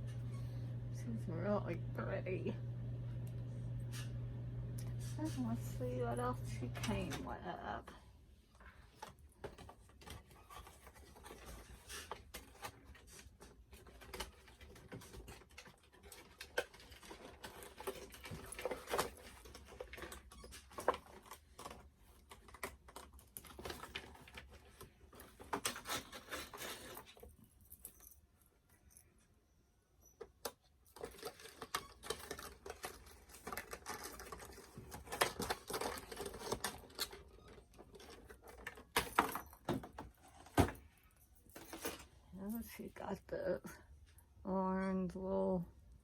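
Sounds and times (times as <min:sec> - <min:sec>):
packaging rustling: 0:09.0 - 0:27.4, 0:30.9 - 0:40.8.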